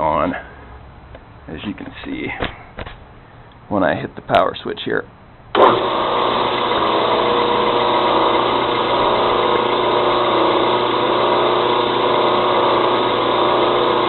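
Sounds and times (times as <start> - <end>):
belt grinder motor hum and whir: 5.6 - 14.0.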